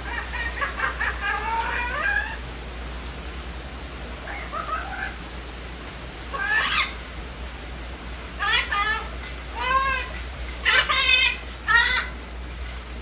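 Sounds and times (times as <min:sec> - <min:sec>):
parrot calling: 0:00.0 - 0:02.5, 0:04.2 - 0:05.3, 0:06.3 - 0:07.2, 0:08.3 - 0:12.3
steady rain falling: 0:00.0 - 0:13.0.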